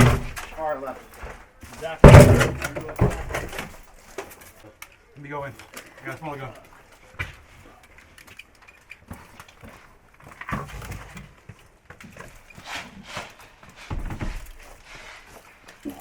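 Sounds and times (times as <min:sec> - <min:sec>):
heavy thumps: 0:00.0 - 0:00.5, 0:02.0 - 0:03.6.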